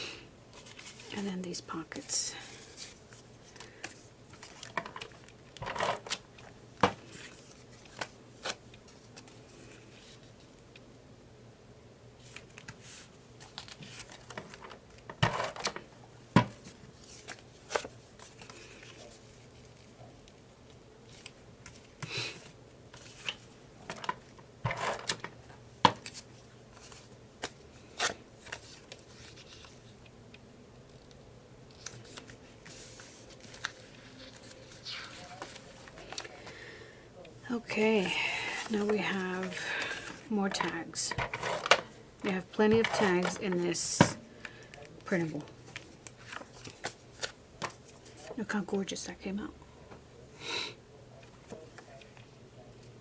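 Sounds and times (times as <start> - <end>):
paper rustling: 0.5 - 1.2, 30.9 - 36.6, 37.6 - 41.9, 45.2 - 48.4.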